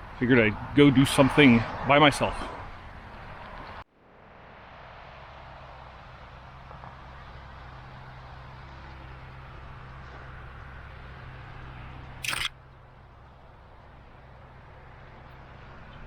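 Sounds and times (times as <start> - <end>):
car humming while moving: 4.4 - 16.0
sharp click: 12.2 - 12.5.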